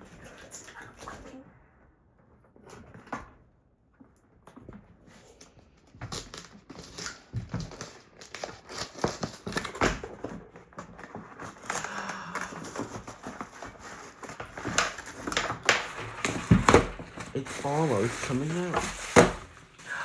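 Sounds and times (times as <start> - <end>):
packing material crinkling and tearing: 6.0 - 20.0.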